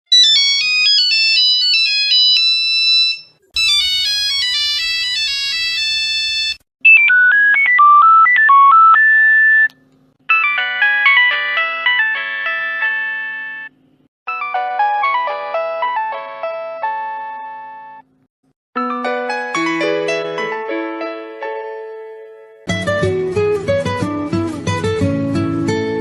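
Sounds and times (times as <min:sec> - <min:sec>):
mobile phone ringtone melodies: 0:00.1 - 0:09.7, 0:10.3 - 0:13.7, 0:14.3 - 0:18.0.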